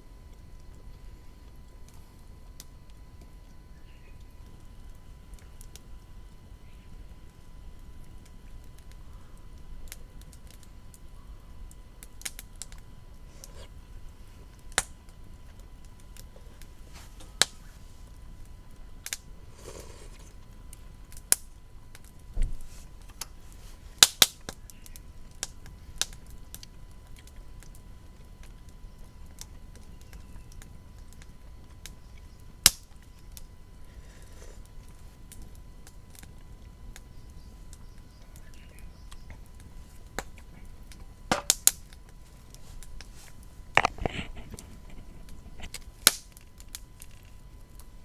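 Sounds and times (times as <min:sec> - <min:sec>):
wood fire crackling: 0:00.0 - 0:48.0.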